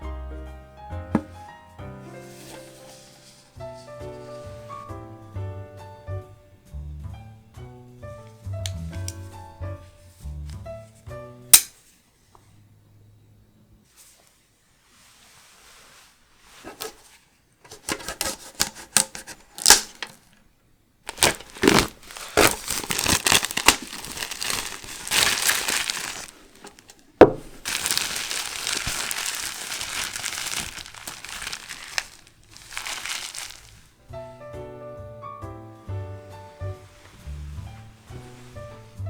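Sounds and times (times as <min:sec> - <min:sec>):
plastic and foil wrapping crinkling: 0:17.7 - 0:20.4, 0:21.0 - 0:34.0.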